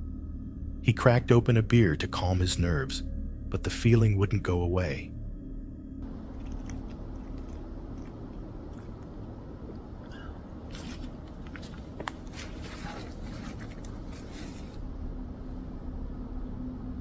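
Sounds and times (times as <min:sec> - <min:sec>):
steady low rumble: 0:00.0 - 0:17.0
handling rustling: 0:10.5 - 0:14.8.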